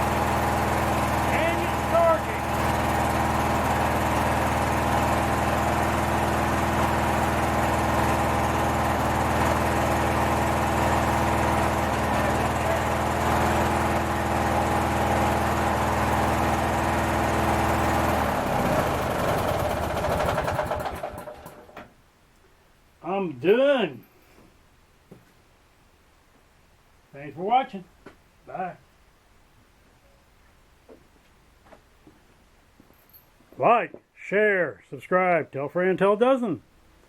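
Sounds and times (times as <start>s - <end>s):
riding mower engine running: 0.0s - 21.9s.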